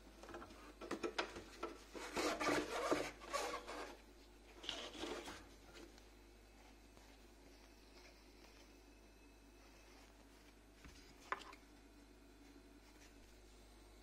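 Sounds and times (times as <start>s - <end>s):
scratchy rubbing and scraping: 1.6s - 4.0s, 4.6s - 5.5s.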